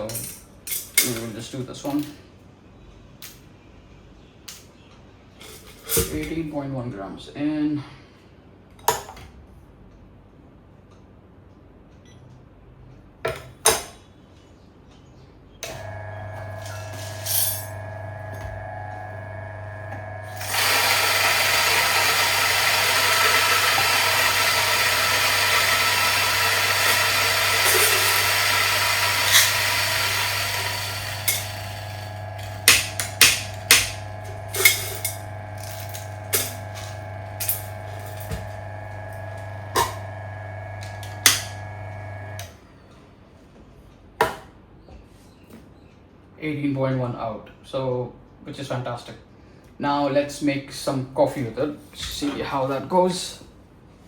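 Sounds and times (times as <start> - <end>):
coffee beans grinding: 15.6 - 42.5
grinder motor humming: 15.6 - 42.6.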